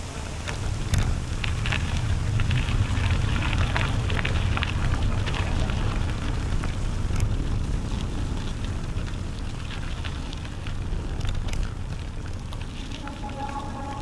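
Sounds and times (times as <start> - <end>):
bicycle tyres crunching on gravel: 0.0 - 14.0
wind noise on microphone: 0.0 - 14.0.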